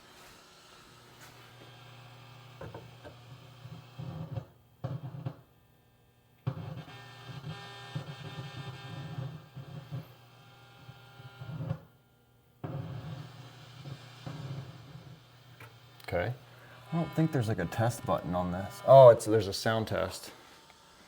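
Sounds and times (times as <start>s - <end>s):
speaker hiss and hum: 12.4s - 21.0s.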